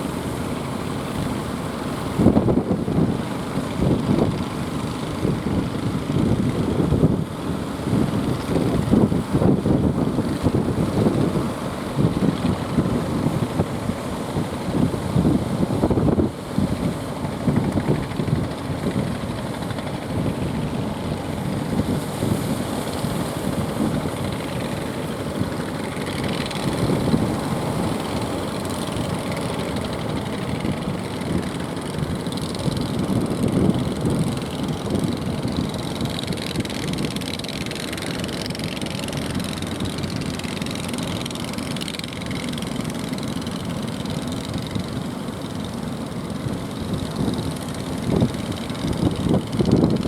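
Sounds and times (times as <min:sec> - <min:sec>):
motorboat engine droning: 0:00.0 - 0:50.0.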